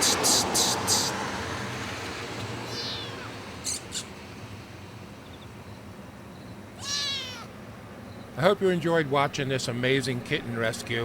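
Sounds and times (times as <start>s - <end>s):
kitten meowing: 2.7s - 4.1s, 6.8s - 7.5s.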